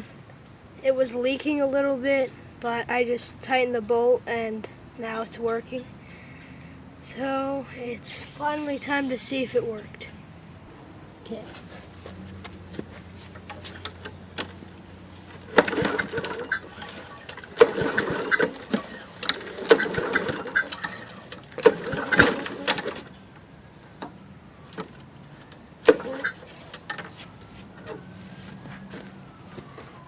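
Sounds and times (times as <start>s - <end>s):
lawn mower engine cranking: 12.4s - 28.1s.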